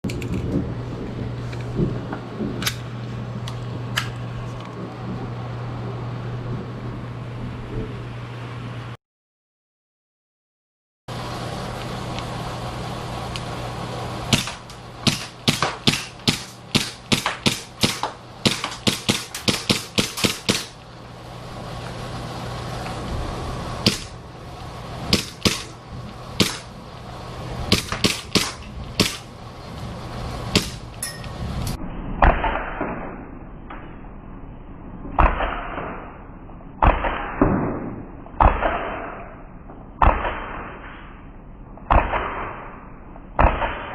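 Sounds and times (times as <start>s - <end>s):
steady low hum: 0.0s - 9.0s, 11.1s - 43.9s
airsoft pistol firing: 14.3s - 20.8s, 23.8s - 24.2s, 25.1s - 25.8s, 26.4s - 26.7s, 27.7s - 29.3s, 30.5s - 30.8s, 32.2s - 33.1s, 35.2s - 36.1s, 36.8s - 39.4s, 40.0s - 40.8s, 41.8s - 43.9s.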